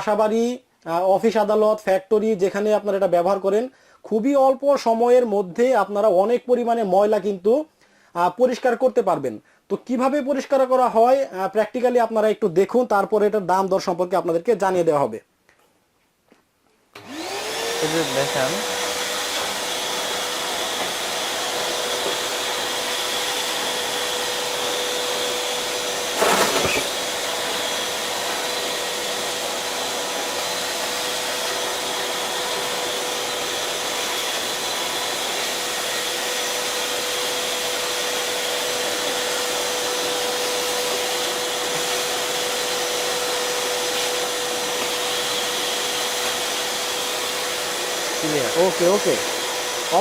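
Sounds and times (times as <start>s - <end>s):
vacuum cleaner running: 17.0s - 50.0s.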